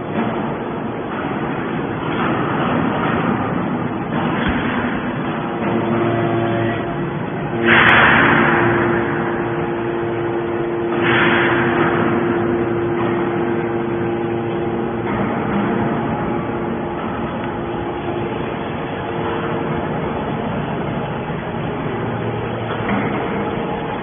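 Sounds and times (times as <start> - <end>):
hydraulic baler humming: 0.0 - 24.0
loud rushing bursts: 6.6 - 22.6.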